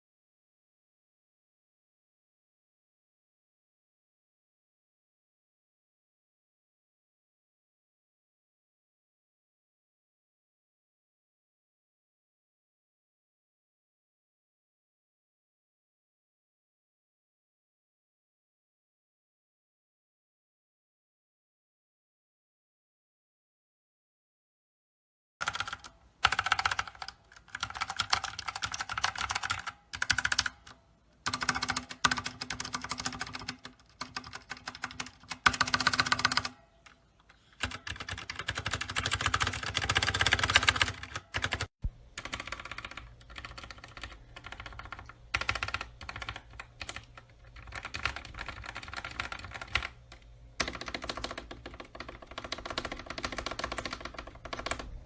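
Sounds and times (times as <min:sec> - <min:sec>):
mechanical keyboard typing: 0:25.4 - 0:37.0, 0:37.6 - 0:54.9.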